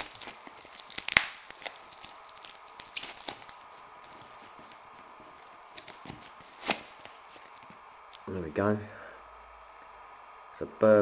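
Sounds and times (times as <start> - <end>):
padlock packaging sharp crack: 0.0 - 3.5
packaging clicks and crinkles: 0.0 - 8.2.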